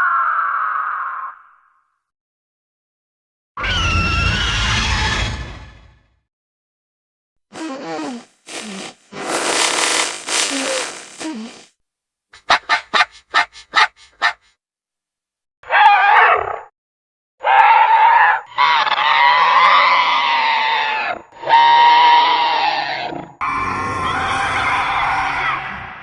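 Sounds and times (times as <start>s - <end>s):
wavering creature calls: 17.4s - 25.9s.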